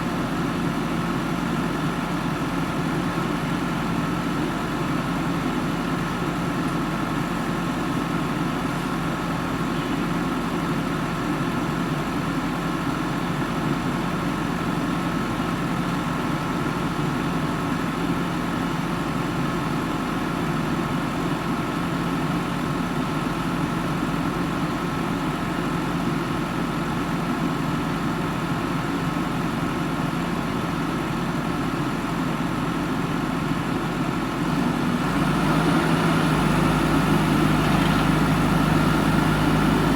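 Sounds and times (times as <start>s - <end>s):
diesel engine running: 27.8s - 39.9s.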